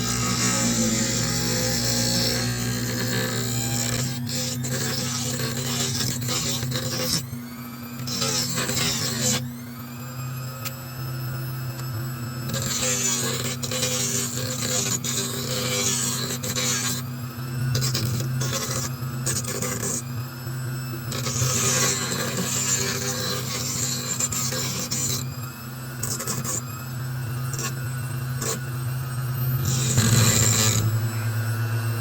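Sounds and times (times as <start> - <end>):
grinder motor running: 0.0 - 32.0
gritty rasping grind: 21.2 - 25.3, 27.4 - 28.7, 29.5 - 31.2.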